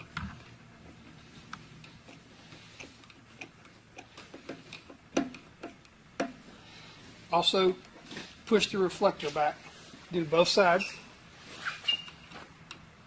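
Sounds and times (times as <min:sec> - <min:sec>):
screwdriver clicking and tapping: 0:02.8 - 0:06.4.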